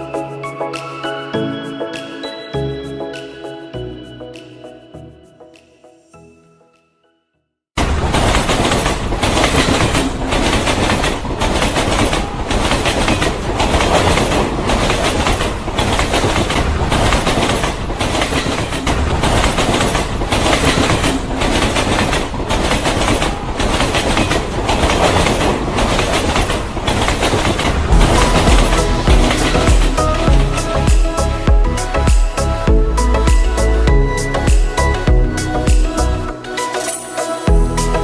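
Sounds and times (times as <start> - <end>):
wheels clattering over rails: 7.8 - 31.8
train rumbling: 7.8 - 34.9.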